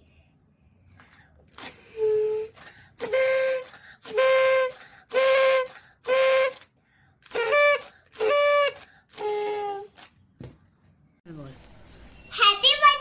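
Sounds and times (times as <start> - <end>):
toy whistle toots: 1.8 - 6.7, 7.3 - 10.0.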